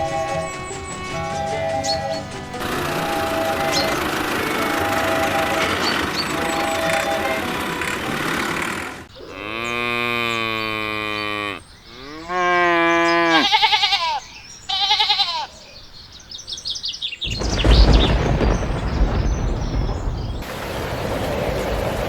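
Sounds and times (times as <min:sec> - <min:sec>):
loud rough rumbling: 0:02.1 - 0:09.1, 0:17.2 - 0:22.0
cattle mooing: 0:02.6 - 0:14.1.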